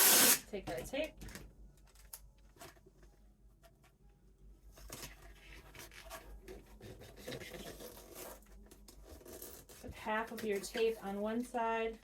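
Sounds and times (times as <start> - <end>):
tape and board rustling: 4.8 - 11.2.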